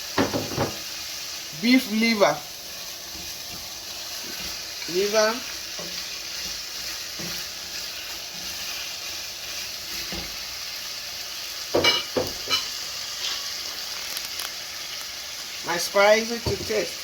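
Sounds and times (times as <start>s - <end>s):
meat sizzling in a frying pan: 0.0s - 17.0s
utensil knocking on pan: 0.2s - 0.8s, 11.7s - 12.6s, 16.4s - 16.8s.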